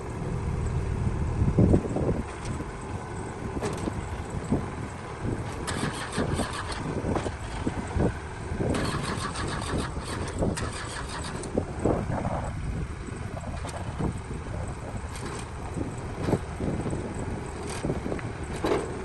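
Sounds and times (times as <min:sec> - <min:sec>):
heavy machinery engine rumbling: 0:00.0 - 0:19.0
rattling and clanking: 0:05.4 - 0:12.0, 0:15.0 - 0:19.0.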